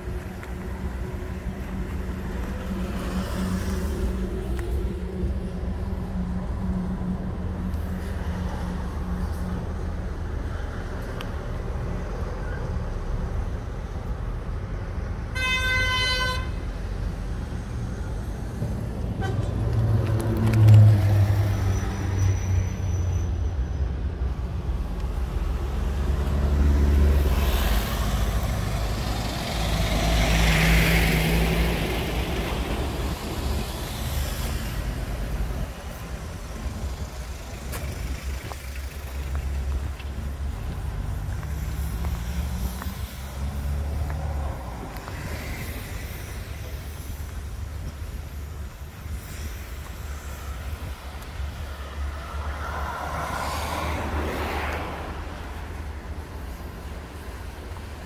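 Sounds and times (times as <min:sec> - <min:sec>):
vehicle horn toot: 0:15.3 - 0:16.6, 0:19.2 - 0:19.5
truck engine rumbling: 0:16.5 - 0:58.0
vehicle passing: 0:24.7 - 0:47.0, 0:51.4 - 0:56.4.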